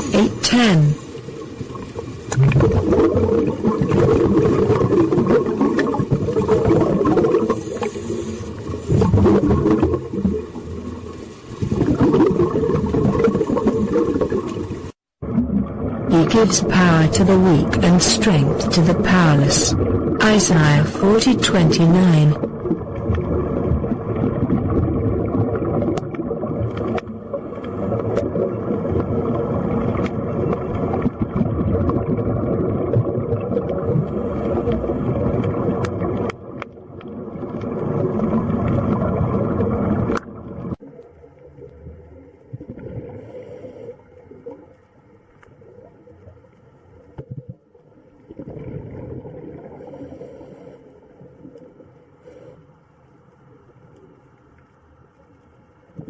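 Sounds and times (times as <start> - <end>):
running water: 0.0 - 43.1.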